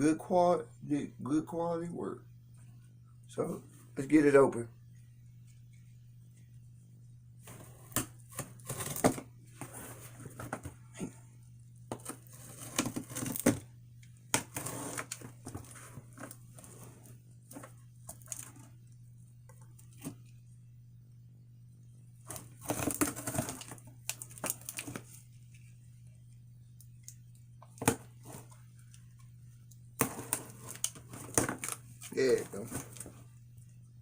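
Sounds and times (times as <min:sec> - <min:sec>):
low hum: 0:00.0 - 0:34.0
cardboard and tape tearing: 0:07.4 - 0:10.1, 0:11.9 - 0:13.6, 0:14.3 - 0:18.6, 0:22.3 - 0:25.2, 0:30.0 - 0:33.1
crinkling and clicks: 0:22.2 - 0:33.9.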